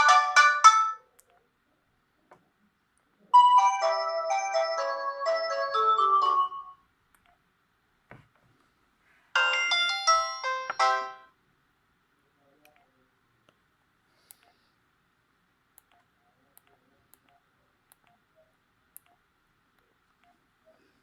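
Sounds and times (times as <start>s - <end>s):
polyphonic phone ringtone: 3.4s - 6.8s, 9.4s - 11.3s.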